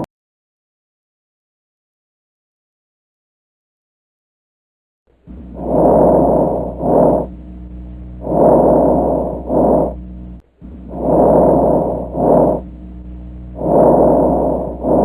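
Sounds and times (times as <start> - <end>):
low steady hum: 5.1 - 15.0
soft breath sounds: 5.2 - 15.0.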